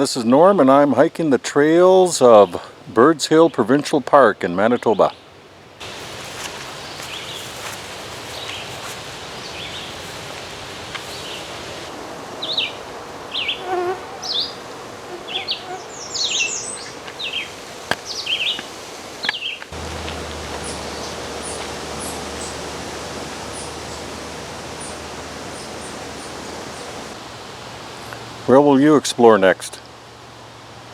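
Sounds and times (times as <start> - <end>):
insect buzz: 5.8 - 27.2
hiss with low hum: 5.8 - 30.9.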